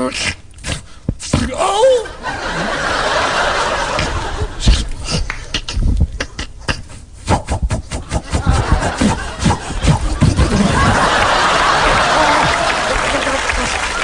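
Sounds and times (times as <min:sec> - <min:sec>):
mouth clicks and pops: 0:04.6 - 0:08.4.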